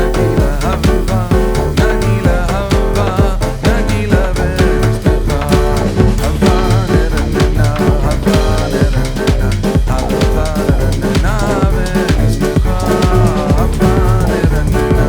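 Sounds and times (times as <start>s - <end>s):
upbeat music with drum beat: 0.0s - 15.0s.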